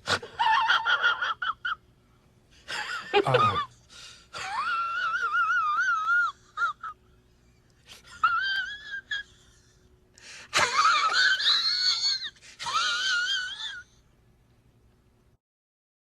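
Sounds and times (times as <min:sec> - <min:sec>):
high-pitched wheezing laugh: 0:00.0 - 0:01.8, 0:02.6 - 0:07.1, 0:07.8 - 0:14.0.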